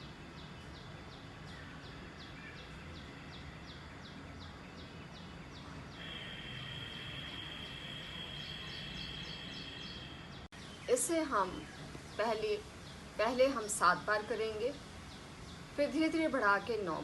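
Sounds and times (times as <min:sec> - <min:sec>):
bird chirping: 0:00.0 - 0:17.0
high-pitched buzz: 0:06.0 - 0:10.3.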